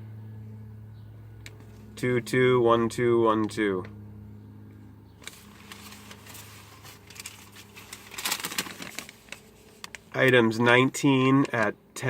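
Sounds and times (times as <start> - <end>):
paper receipts rustling: 5.2 - 10.6.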